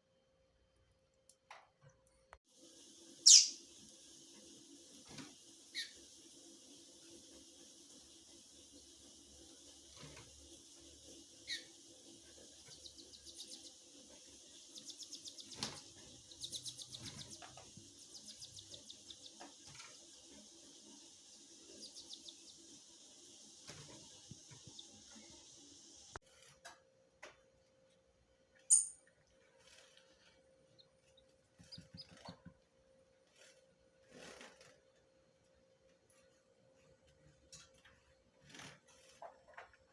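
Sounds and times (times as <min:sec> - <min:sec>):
steady hiss: 0:02.5 - 0:26.2
bird high chirps: 0:03.2 - 0:03.7, 0:05.7 - 0:06.1, 0:11.4 - 0:20.0, 0:20.9 - 0:22.8, 0:28.7 - 0:29.0.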